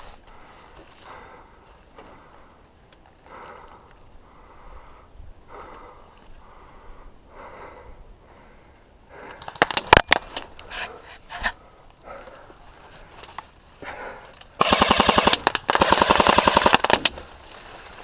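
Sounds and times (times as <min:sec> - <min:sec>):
heavy breathing: 0:00.0 - 0:09.7, 0:10.4 - 0:15.3
airsoft gun shots: 0:14.6 - 0:17.1.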